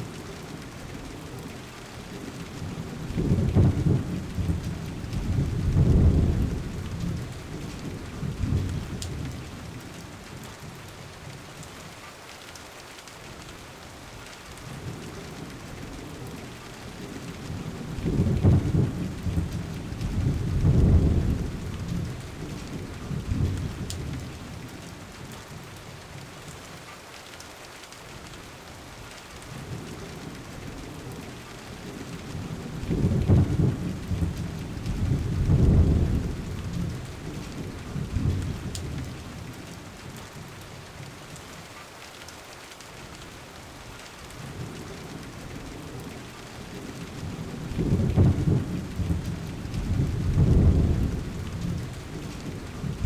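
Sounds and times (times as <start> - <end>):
steady rain hissing: 0.0 - 53.0
thunder rumbling: 2.2 - 9.6, 16.1 - 24.7, 31.8 - 39.6, 46.6 - 53.0.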